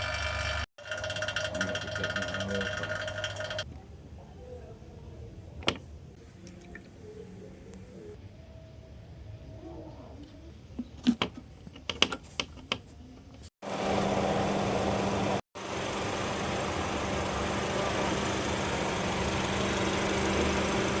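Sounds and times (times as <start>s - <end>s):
car engine running: 13.8s - 21.0s.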